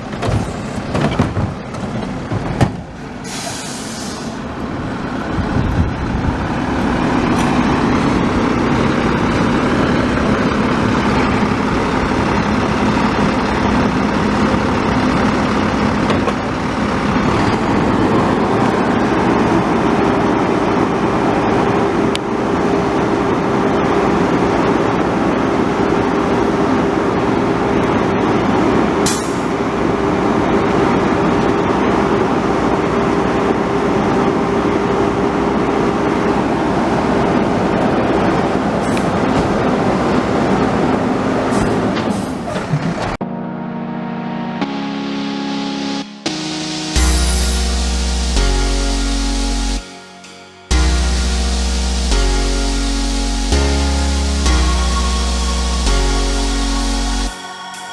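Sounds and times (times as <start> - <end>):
garbage truck whining: 0.0 - 57.9
air hiss: 3.2 - 4.4.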